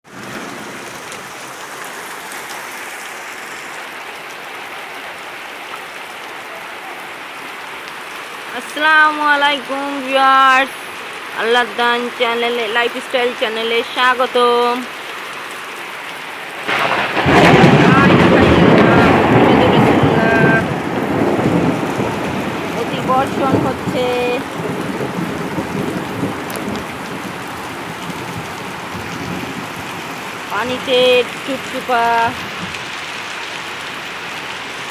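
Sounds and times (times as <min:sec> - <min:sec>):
heavy rain pouring: 0:00.0 - 0:34.9
sharp raindrop ticks: 0:23.4 - 0:30.5.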